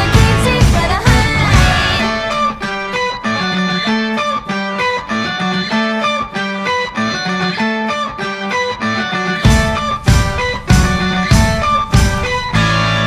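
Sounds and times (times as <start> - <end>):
bass line: 0.0 - 3.8, 9.4 - 13.0
picked guitar melody: 0.0 - 13.0.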